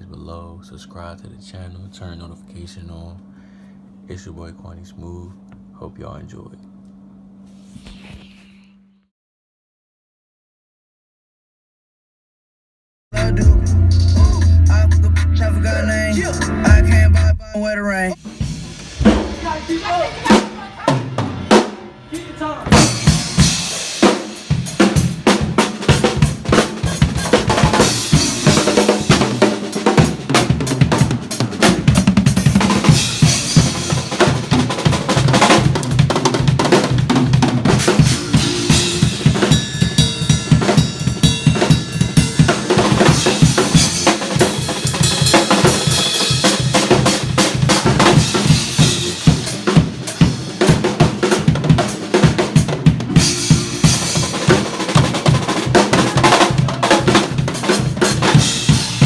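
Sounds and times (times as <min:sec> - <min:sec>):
band sustained notes: 0:13.2 - 0:35.4, 0:37.6 - 0:46.4, 0:48.2 - 0:50.6, 0:53.0 - 0:59.0
drum kit played fast: 0:13.2 - 0:59.0.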